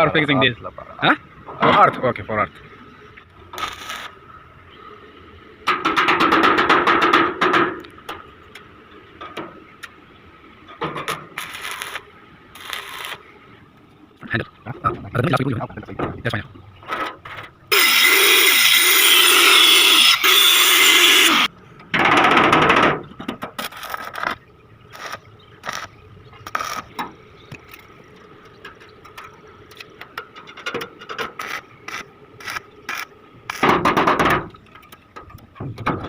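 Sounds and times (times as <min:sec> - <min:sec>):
arc welding hiss and crackle: 0:03.5 - 0:04.2, 0:11.0 - 0:13.3, 0:17.7 - 0:21.5, 0:23.6 - 0:27.0, 0:30.7 - 0:33.7.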